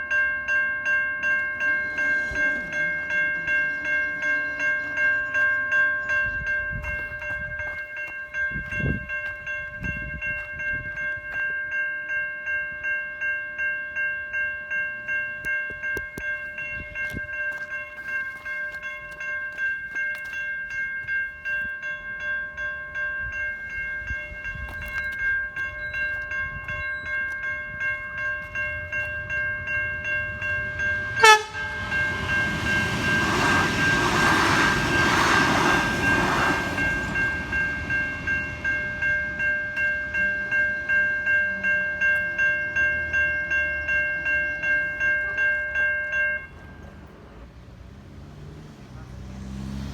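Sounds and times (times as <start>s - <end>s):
approaching train: 0.0s - 49.9s
level crossing warning bells: 0.0s - 49.9s
train horn blast: 31.0s - 33.5s.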